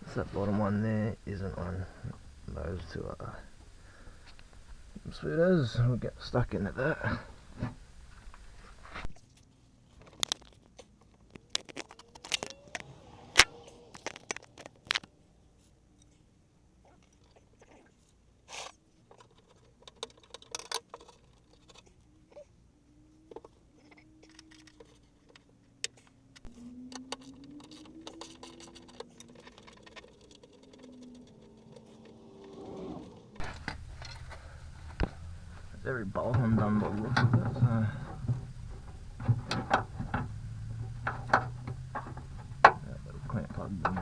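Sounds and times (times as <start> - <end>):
hand tools clicking and scraping: 9.0 - 16.2, 16.9 - 22.5, 23.1 - 34.3.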